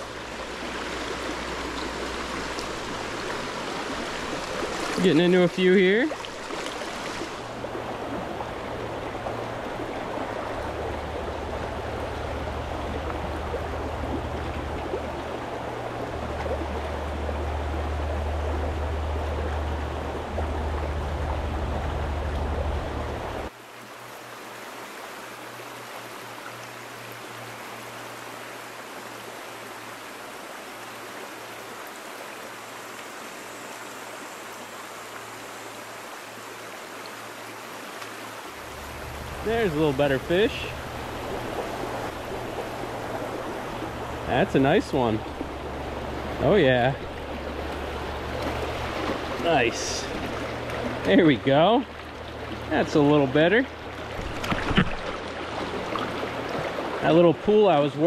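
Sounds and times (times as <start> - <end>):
stream water rushing: 0.0 - 58.0
low rumble: 10.9 - 23.5.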